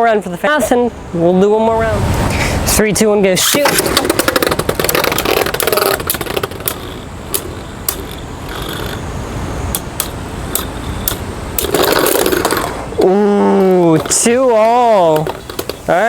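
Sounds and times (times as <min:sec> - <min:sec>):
scraping rush: 0:01.6 - 0:09.1
spinning tops whirring: 0:03.4 - 0:09.1.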